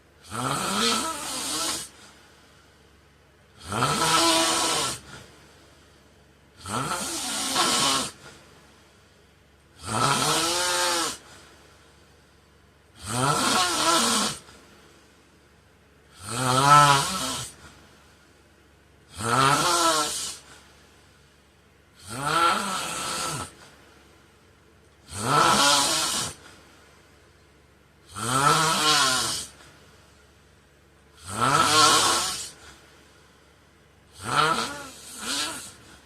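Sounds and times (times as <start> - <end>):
man snoring: 0.2 - 2.1, 3.6 - 5.3, 6.6 - 8.4, 9.8 - 11.3, 13.0 - 14.5, 16.1 - 17.7, 19.1 - 20.5, 22.0 - 23.7, 25.0 - 26.5, 28.1 - 29.6, 31.2 - 32.8, 34.1 - 36.0.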